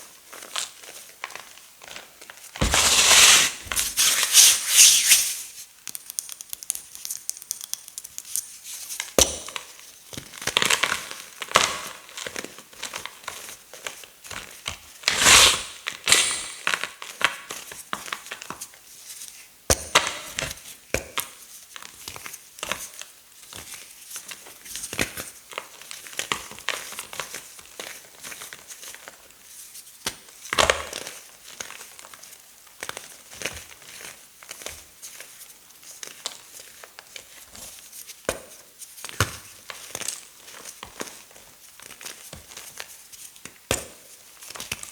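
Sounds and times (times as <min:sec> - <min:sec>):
chalk being crushed: 0:02.6 - 0:05.6.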